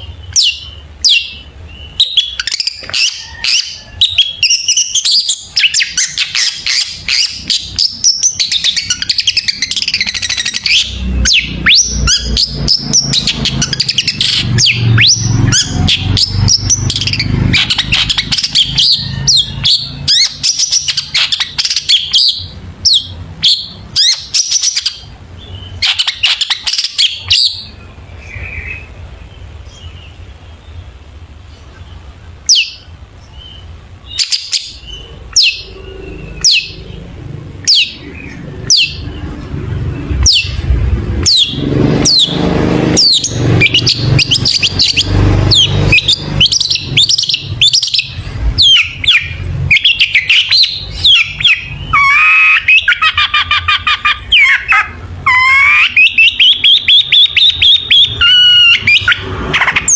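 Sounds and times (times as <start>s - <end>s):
bird singing sharp chirps: 32.5s - 59.9s.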